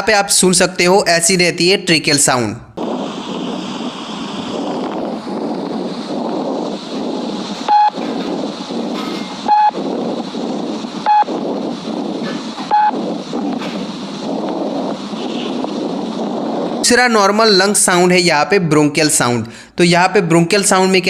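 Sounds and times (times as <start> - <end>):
short beeps: 7.7 - 8.0, 9.5 - 9.8
breathing through a stethoscope: 19.5 - 19.8.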